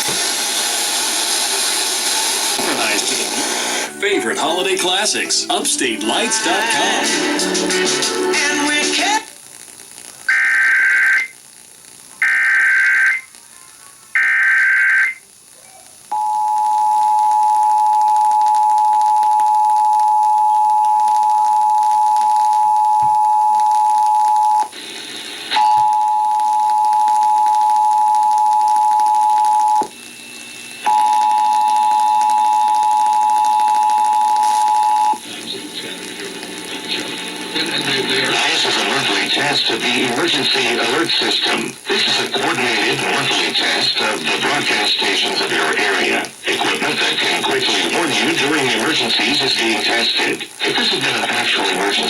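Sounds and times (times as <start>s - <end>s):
voice speaking a message: 4.0s - 7.2s, 35.2s - 52.0s
screeching digital data bursts: 12.2s - 13.3s.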